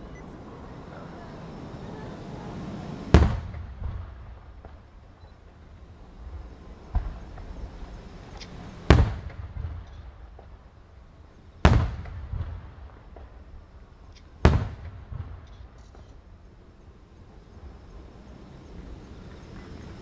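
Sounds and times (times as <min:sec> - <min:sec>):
firework crack: 0:00.0 - 0:18.1
firework shells booming: 0:03.0 - 0:16.5
faint firework pops: 0:03.1 - 0:05.6, 0:06.9 - 0:10.7, 0:11.6 - 0:16.3.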